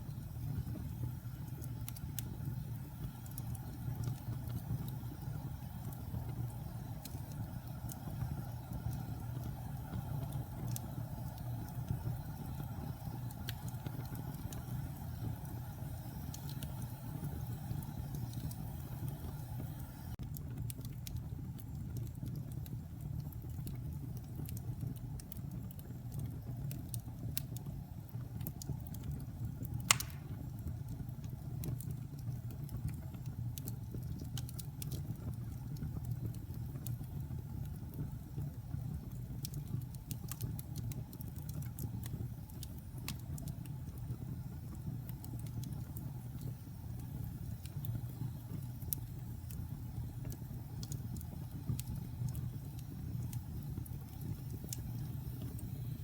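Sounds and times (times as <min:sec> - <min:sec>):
fire crackling: 0:00.0 - 0:56.0
fire rumbling: 0:00.0 - 0:56.0
sharp loud pop: 0:29.9 - 0:30.3.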